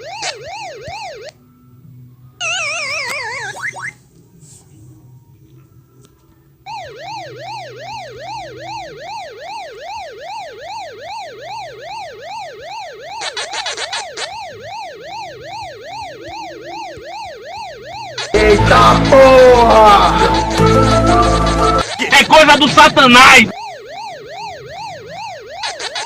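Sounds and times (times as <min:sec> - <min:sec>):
warbling siren-like tone: 0:14.2 - 0:26.0.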